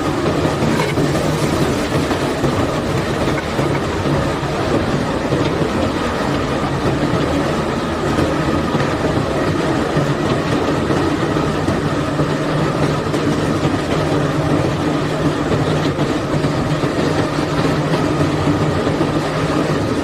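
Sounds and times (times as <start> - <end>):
machinery engine hum: 0.0 - 20.0
rattle of rock moving: 0.6 - 4.3.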